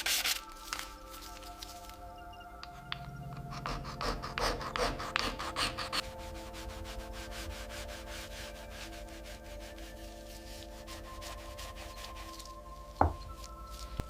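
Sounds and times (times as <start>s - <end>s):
hand sanding strokes: 3.4s - 12.6s.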